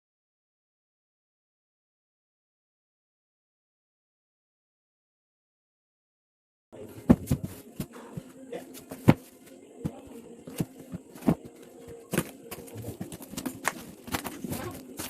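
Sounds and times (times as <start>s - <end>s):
objects knocking and rustling: 6.9s - 15.0s.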